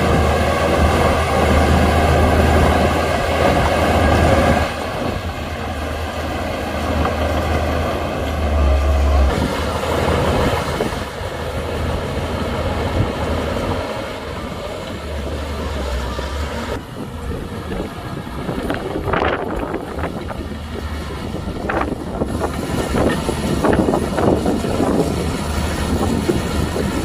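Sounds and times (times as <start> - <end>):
bulldozer diesel engine under load: 0.0 - 27.0.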